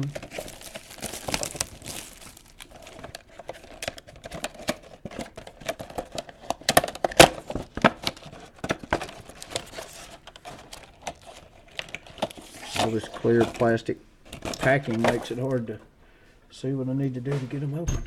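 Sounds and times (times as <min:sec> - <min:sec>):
plastic packaging clicks and taps: 0:00.0 - 0:12.9.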